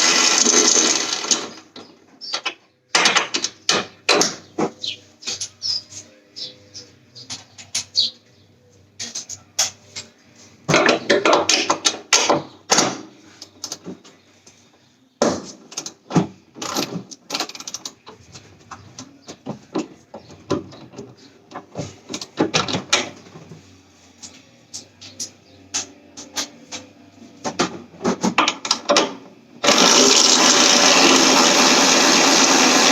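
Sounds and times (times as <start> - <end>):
tools and metal parts clattering: 0.3 - 5.6, 10.7 - 14.2, 15.3 - 23.6, 24.2 - 29.4.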